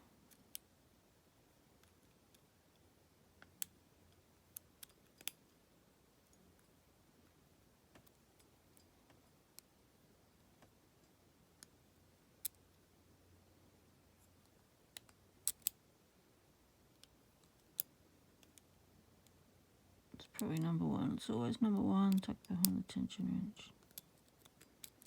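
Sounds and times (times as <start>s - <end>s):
lock pick clicking: 15.0s - 15.8s, 23.8s - 25.0s.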